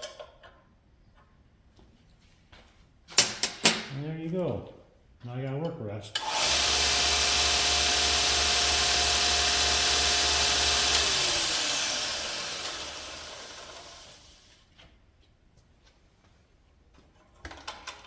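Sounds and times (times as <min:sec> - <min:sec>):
motor coasting down: 0:06.2 - 0:14.4
belt grinder running: 0:06.2 - 0:14.5.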